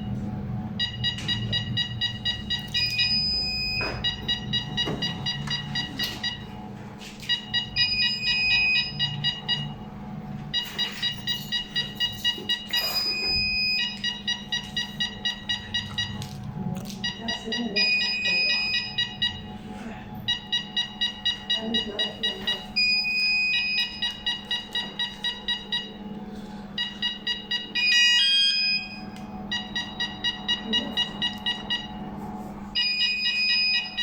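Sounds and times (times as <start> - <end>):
electronic alarm siren: 0.0 - 34.0
steady low hum: 0.0 - 34.0.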